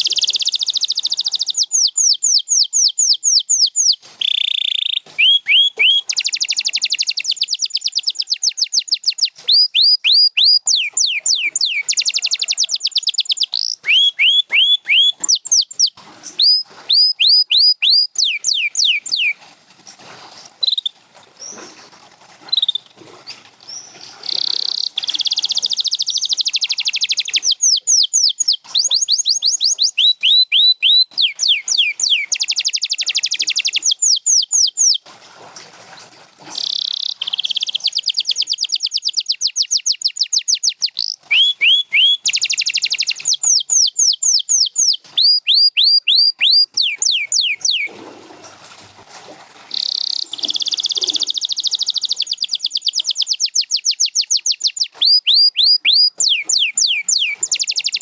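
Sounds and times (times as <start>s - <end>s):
canary singing: 0.0s - 19.4s, 23.7s - 35.0s, 36.6s - 47.9s, 49.7s - 58.0s.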